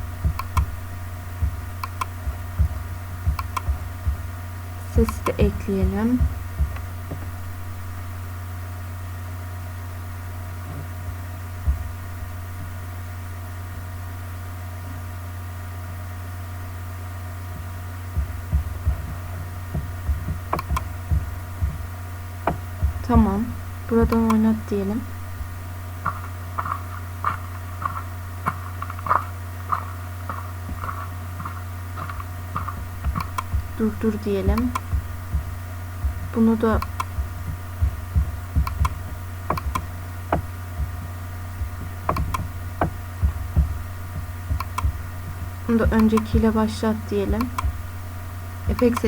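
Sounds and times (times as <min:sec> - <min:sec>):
footsteps: 0:00.0 - 0:04.3, 0:05.0 - 0:07.3, 0:17.5 - 0:24.4, 0:25.3 - 0:46.6
faint steady tones: 0:00.0 - 0:49.0
low electrical hum: 0:00.0 - 0:49.0.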